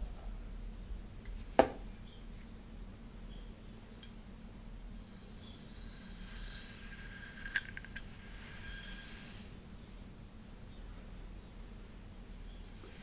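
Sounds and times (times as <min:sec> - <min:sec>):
hair rustling: 0:05.8 - 0:08.7.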